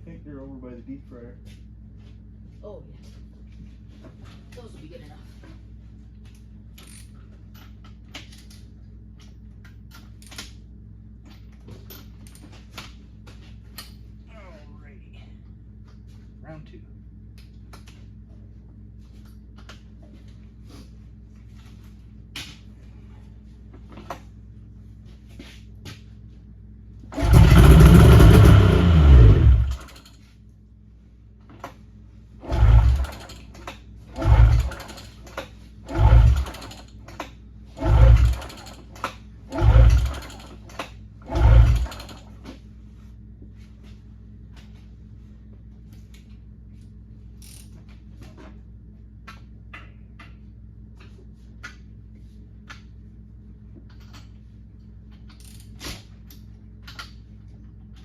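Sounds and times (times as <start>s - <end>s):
snowmobile engine starting: 27.1s - 30.0s, 32.4s - 33.3s, 34.2s - 35.0s, 35.9s - 36.8s, 37.8s - 38.8s, 39.5s - 40.6s, 41.2s - 42.3s
failed engine start attempts: 27.1s - 30.1s, 32.4s - 37.0s, 37.8s - 42.4s.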